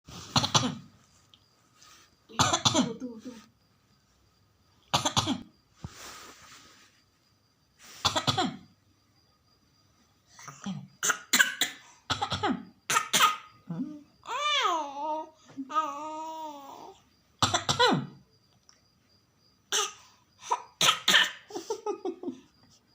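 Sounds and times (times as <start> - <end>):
child coughing: 0.4 - 0.8, 2.4 - 3.0, 4.9 - 5.5, 8.1 - 8.6, 10.5 - 13.6, 17.4 - 18.2, 19.7 - 21.5.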